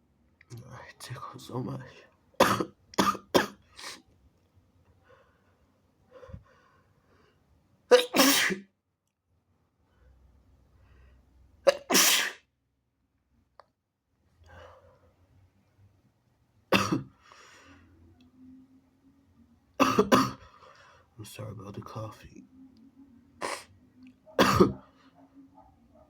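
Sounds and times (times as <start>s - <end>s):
person sneezing: 2.4s - 4.0s, 7.9s - 8.6s, 11.7s - 12.4s, 23.4s - 23.7s, 24.4s - 24.8s
faint breathing: 5.0s - 7.5s, 9.8s - 11.3s, 14.4s - 15.2s, 17.2s - 18.0s, 20.4s - 21.2s.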